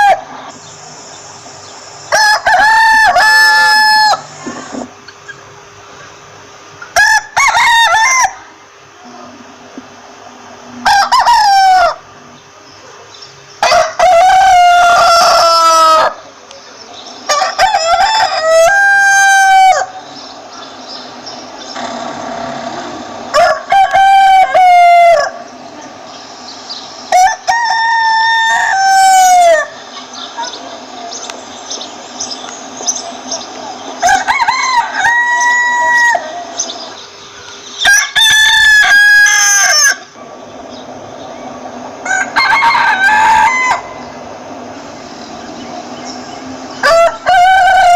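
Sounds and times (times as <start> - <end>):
rooster crowing: 2.1 - 4.8, 7.0 - 8.5, 10.7 - 12.1, 13.6 - 16.3, 17.3 - 20.1, 21.8 - 25.6, 27.1 - 29.9, 34.0 - 36.8, 37.8 - 40.2, 42.0 - 44.7, 46.4 - 47.9.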